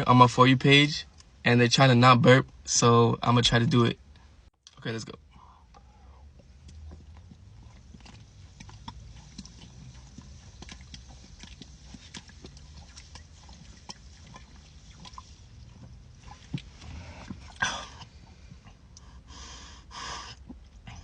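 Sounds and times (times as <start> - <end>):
person gulping water: 5.7 - 19.0, 20.3 - 21.0.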